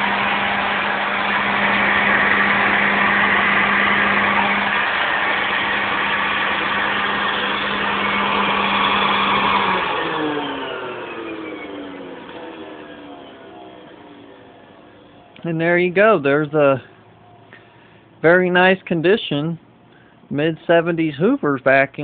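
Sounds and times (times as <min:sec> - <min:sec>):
vacuum cleaner motor running: 0:00.0 - 0:17.5
motor winding down whine: 0:00.0 - 0:17.6.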